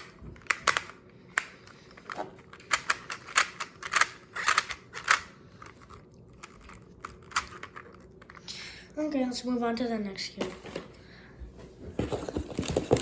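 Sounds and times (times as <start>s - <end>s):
plastic puzzle clicks: 0.0s - 8.4s.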